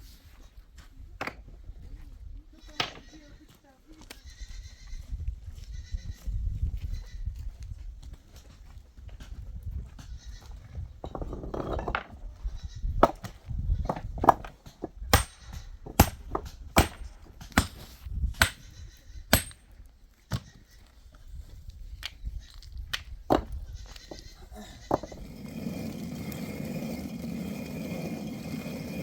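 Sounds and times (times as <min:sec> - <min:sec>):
sheep and goats bleating: 0:04.1 - 0:05.0.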